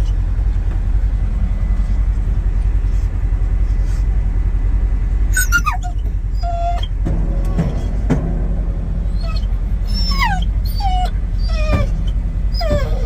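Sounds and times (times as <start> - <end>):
low rumble: 0.0 - 13.0
dog whining: 5.3 - 8.0, 9.0 - 13.0.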